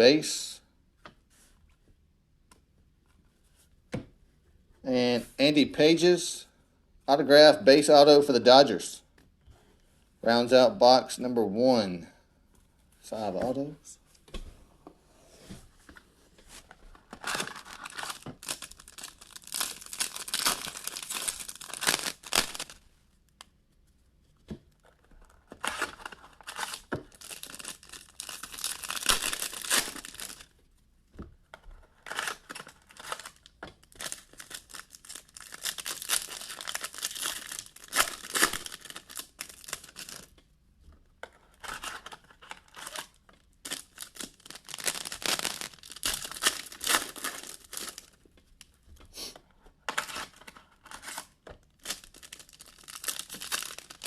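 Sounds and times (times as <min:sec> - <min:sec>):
plastic wrapping crinkling and tearing: 0:16.5 - 0:22.8, 0:24.8 - 0:30.5, 0:32.0 - 0:40.3, 0:41.5 - 0:48.3, 0:50.0 - 0:54.0.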